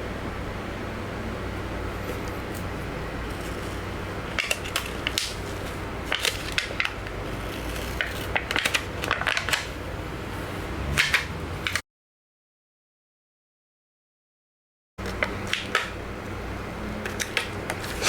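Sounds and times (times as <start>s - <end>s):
plastic film peeling off crackling: 3.3s - 9.7s.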